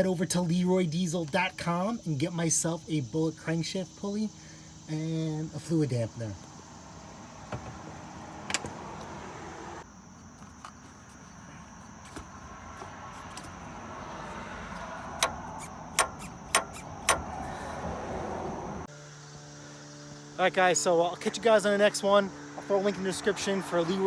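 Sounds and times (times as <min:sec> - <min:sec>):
loose pulley clacking: 0:15.2 - 0:17.4.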